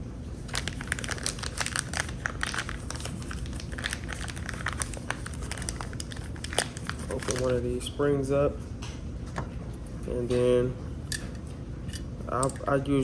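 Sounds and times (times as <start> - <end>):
plastic packaging crinkling: 0.4 - 7.8.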